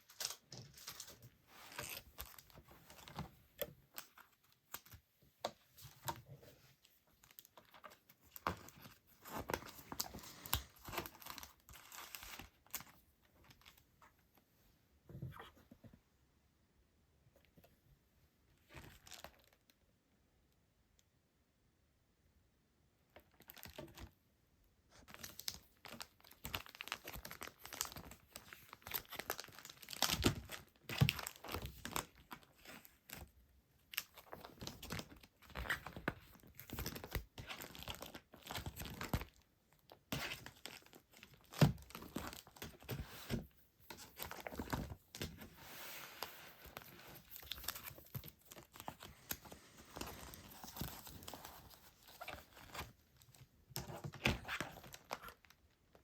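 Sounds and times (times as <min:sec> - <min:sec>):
packaging crinkling and tearing: 0:25.1 - 0:33.2, 0:33.9 - 0:39.4, 0:40.2 - 0:55.6.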